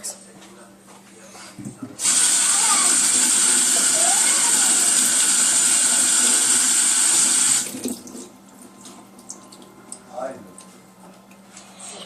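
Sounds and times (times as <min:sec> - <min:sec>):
tap water running into sink: 0:02.0 - 0:10.0.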